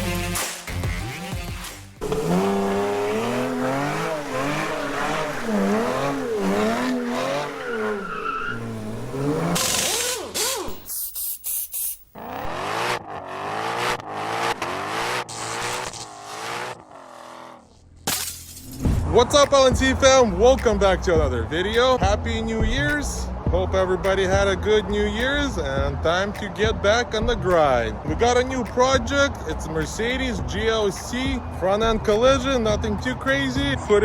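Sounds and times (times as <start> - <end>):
car engine revving: 2.0 - 10.9, 12.1 - 18.0.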